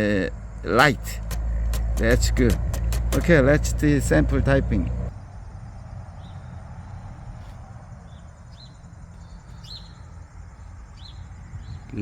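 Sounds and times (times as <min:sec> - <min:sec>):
steady low hum: 0:00.0 - 0:11.8
faint bird chirps: 0:05.1 - 0:12.0.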